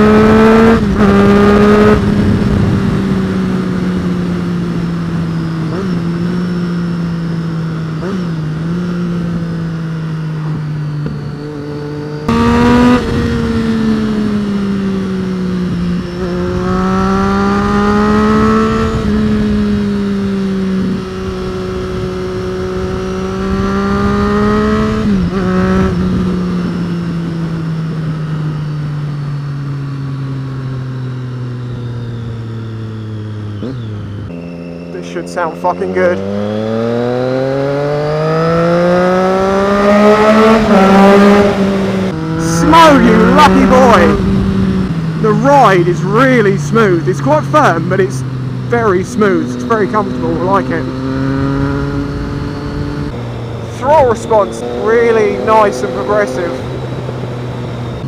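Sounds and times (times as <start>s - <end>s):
wind noise: 0.0s - 6.2s, 12.3s - 28.6s, 38.4s - 45.4s
motorcycle engine revving: 0.0s - 58.0s.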